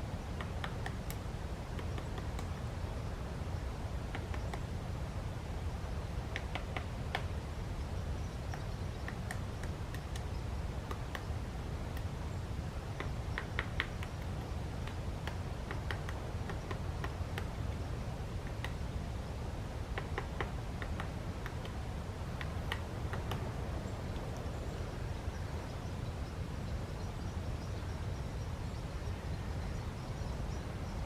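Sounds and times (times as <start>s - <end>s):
woodpecker tapping on tree: 0.2s - 4.8s, 6.2s - 7.4s, 8.2s - 19.0s, 19.8s - 24.8s.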